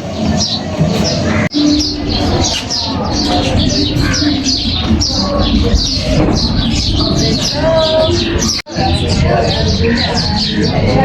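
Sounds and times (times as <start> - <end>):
small birds chirping: 0.0 - 11.0.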